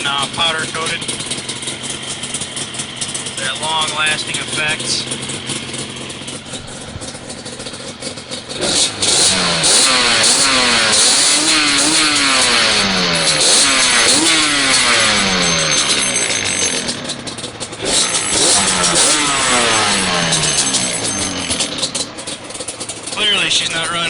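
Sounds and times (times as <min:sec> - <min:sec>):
two-stroke engine revving: 0:00.0 - 0:24.0.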